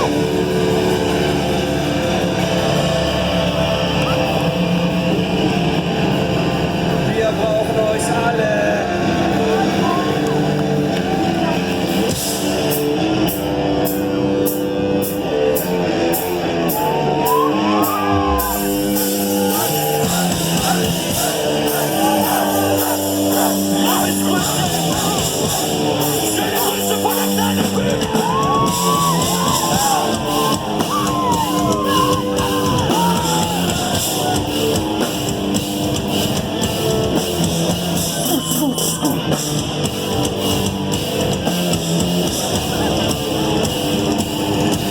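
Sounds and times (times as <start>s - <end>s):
live rock band: 0.0s - 44.9s
person singing: 19.3s - 34.8s.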